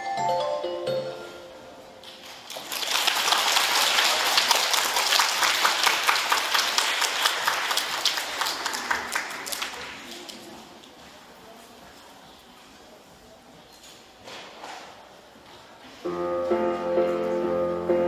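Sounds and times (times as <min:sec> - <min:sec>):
audience applauding: 0:02.0 - 0:10.3.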